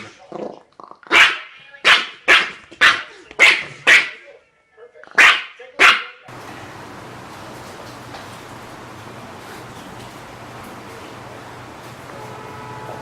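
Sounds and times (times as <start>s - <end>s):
dog barking: 1.1s - 4.2s, 5.1s - 6.3s.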